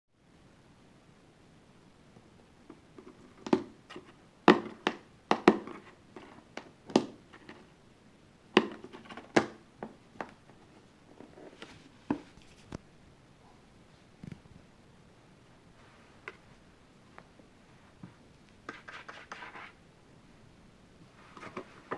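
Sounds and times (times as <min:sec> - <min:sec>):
cat knocking cardboard box: 0:04.5 - 0:05.8.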